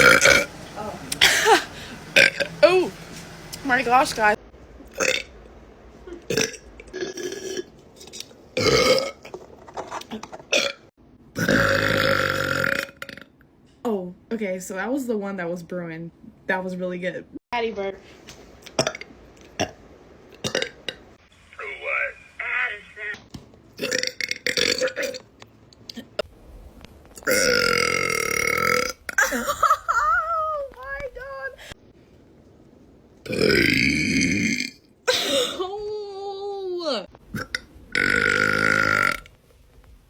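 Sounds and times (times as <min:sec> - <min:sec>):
person burping: 0:04.9 - 0:05.3, 0:06.1 - 0:07.7, 0:08.6 - 0:09.3, 0:10.2 - 0:13.3, 0:18.8 - 0:19.8, 0:20.4 - 0:21.0, 0:23.8 - 0:25.2, 0:27.3 - 0:29.5, 0:33.3 - 0:35.6, 0:37.3 - 0:39.3.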